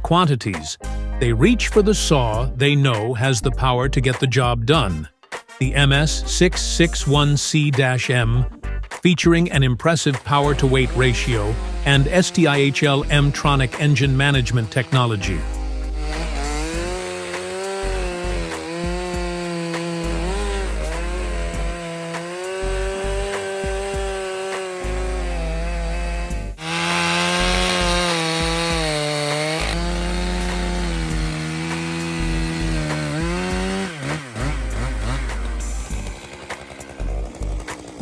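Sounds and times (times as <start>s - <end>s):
chainsaw cutting wood: 10.2s - 38.0s.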